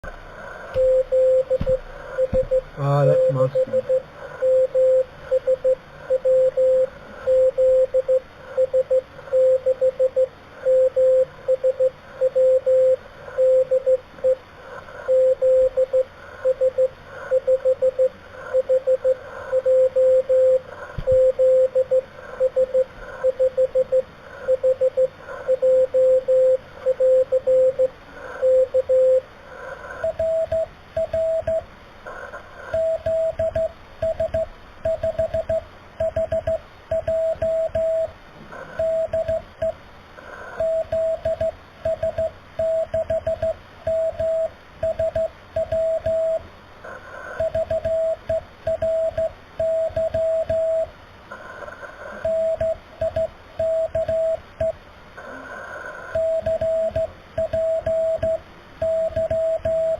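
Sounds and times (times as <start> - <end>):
morse code tone: 0.8 - 14.4, 40.6 - 46.4, 56.2 - 59.9.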